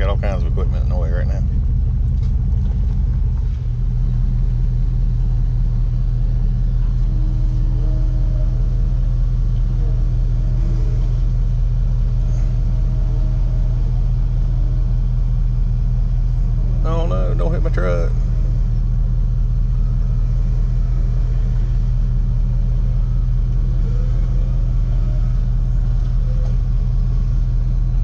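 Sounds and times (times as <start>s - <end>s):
faint wavering whine: 0.0s - 28.0s
truck engine rumble: 0.0s - 28.0s.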